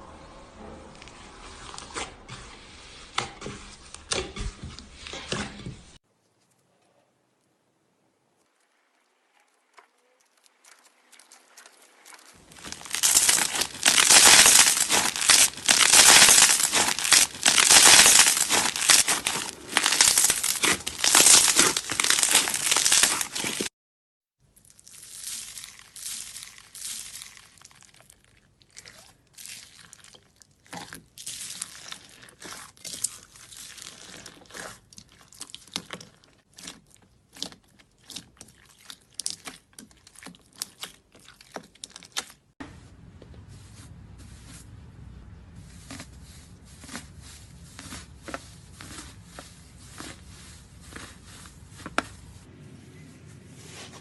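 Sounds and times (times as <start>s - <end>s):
slime crackling and popping: 12.4s - 23.7s, 24.6s - 42.5s.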